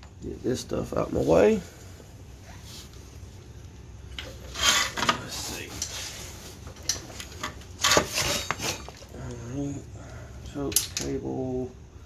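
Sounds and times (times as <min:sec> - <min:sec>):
low steady hum: 0:00.0 - 0:12.0
metal tools clinking and rattling: 0:06.8 - 0:09.0, 0:10.6 - 0:11.2.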